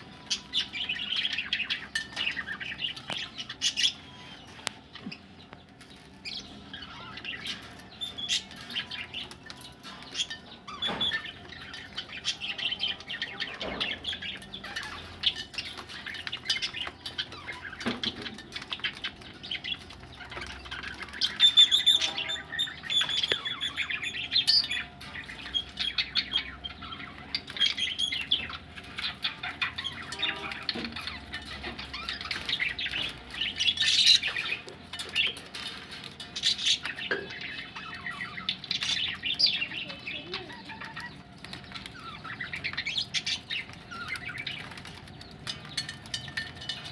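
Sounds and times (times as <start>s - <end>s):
budgerigars chattering and chirping: 0.0s - 46.9s.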